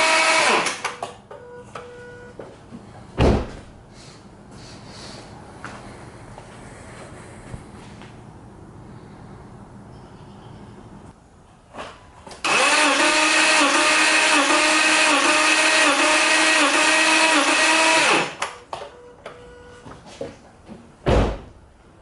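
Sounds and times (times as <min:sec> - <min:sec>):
heavy thump: 0:03.2 - 0:03.8, 0:21.0 - 0:21.6
starter motor cranking engine: 0:12.4 - 0:18.4.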